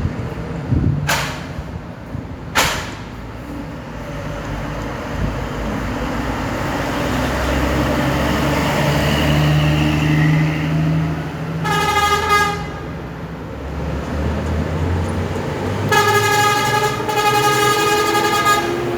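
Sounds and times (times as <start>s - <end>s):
buses passing: 0.0s - 18.9s
bus horn blasts: 11.6s - 13.0s, 15.9s - 18.9s.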